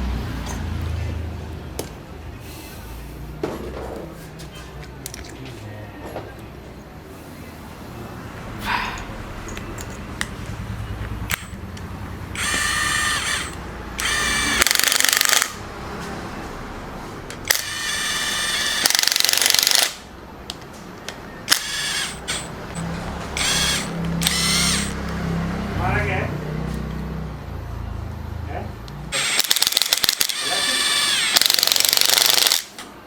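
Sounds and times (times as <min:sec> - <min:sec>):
cordless drill whirring: 0:12.3 - 0:15.6, 0:17.5 - 0:20.0, 0:21.5 - 0:22.8, 0:23.4 - 0:25.0, 0:29.1 - 0:32.8.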